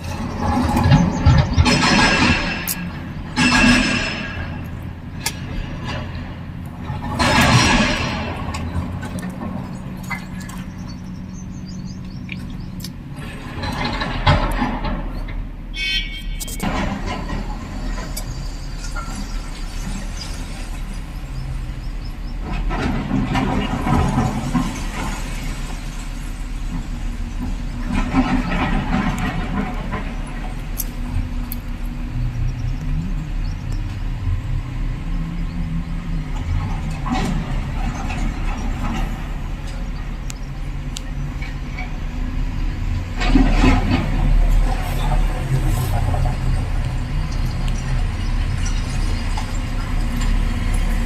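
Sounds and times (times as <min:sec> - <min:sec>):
excavator diesel engine drone: 0:00.0 - 0:51.0.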